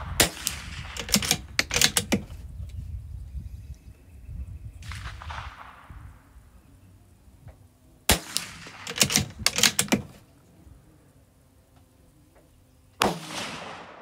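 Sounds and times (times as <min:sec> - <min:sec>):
rifle shot: 0:00.0 - 0:02.3, 0:04.8 - 0:06.3, 0:08.1 - 0:10.1, 0:13.0 - 0:14.0
rifle bolt metallic clicks: 0:00.6 - 0:02.4, 0:08.4 - 0:10.2.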